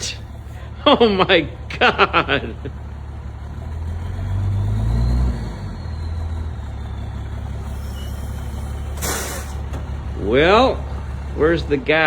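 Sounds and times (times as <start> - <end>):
truck engine running at low revs: 0.0 - 12.0
short rushing noise: 8.3 - 9.7.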